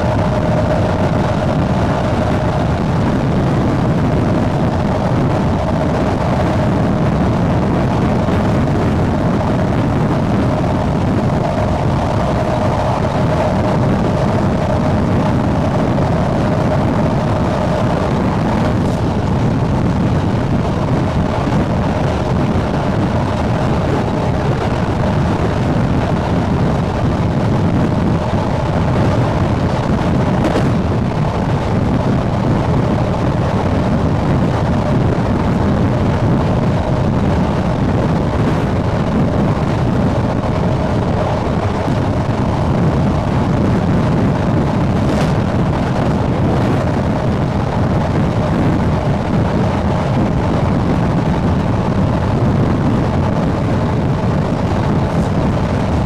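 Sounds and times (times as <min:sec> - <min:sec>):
train motors rumbling: 0:00.0 - 0:56.0
wind buffeting microphone: 0:00.0 - 0:56.0.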